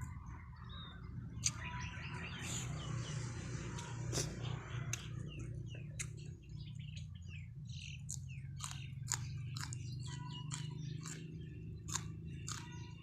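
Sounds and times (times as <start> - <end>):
small birds chirping: 0.0 - 13.0
person chewing and slurping noodles: 3.7 - 5.1, 8.0 - 11.3, 11.9 - 12.9.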